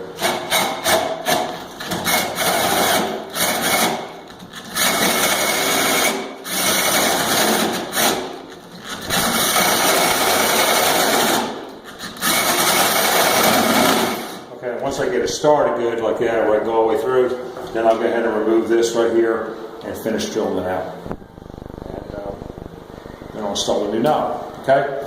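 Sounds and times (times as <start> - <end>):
power drill cutting into door: 0.2 - 8.3, 9.0 - 14.4.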